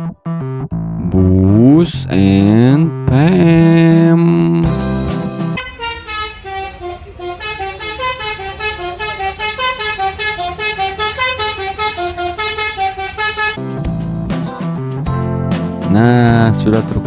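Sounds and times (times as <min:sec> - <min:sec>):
bus horn tooting melody: 0:04.6 - 0:13.9.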